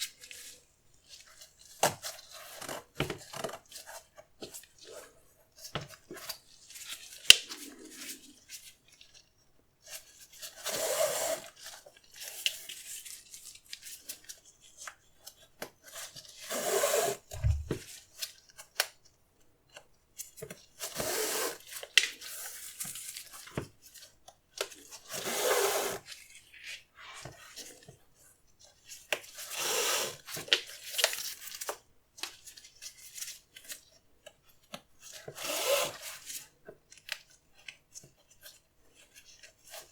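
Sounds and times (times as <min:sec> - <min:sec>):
soft low thump: 0:17.3 - 0:17.8.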